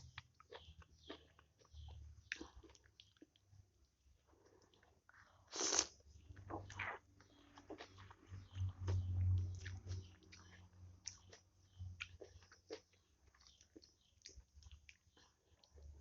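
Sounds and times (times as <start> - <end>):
person chewing with mouth clicks: 4.6 - 11.4.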